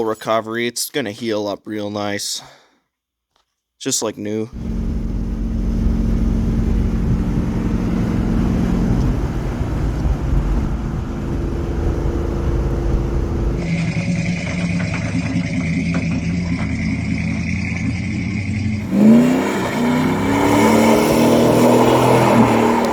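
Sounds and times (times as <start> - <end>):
high steady whine: 4.6 - 14.0
engine running: 4.6 - 22.9.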